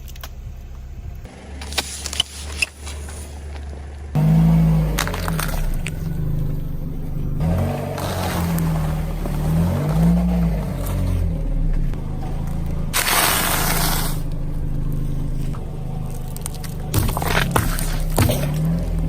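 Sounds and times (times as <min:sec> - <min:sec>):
car engine running: 0:00.0 - 0:19.0
scraping and crunching under tyres: 0:00.0 - 0:19.0
sharp cracks: 0:11.7 - 0:19.0.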